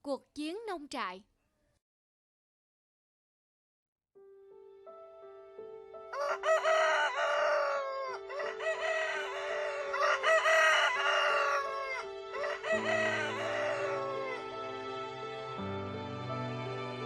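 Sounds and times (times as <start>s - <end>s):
soft background music: 4.2s - 17.0s
rooster crowing: 6.1s - 14.6s.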